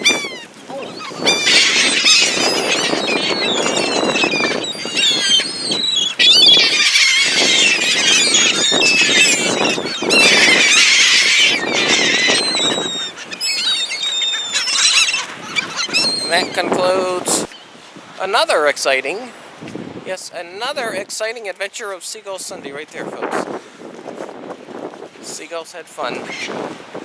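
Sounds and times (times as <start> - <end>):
seagulls calling: 0.0 - 17.7.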